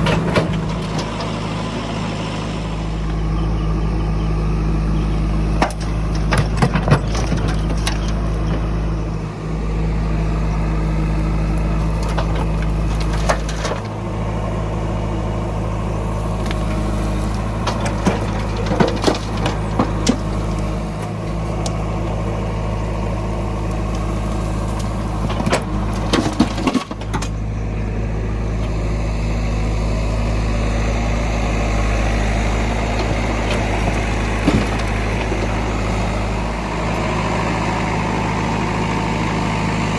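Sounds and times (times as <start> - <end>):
heavy diesel engine running: 0.0 - 39.9
metallic clanks and knocks: 5.6 - 8.7, 17.5 - 20.5.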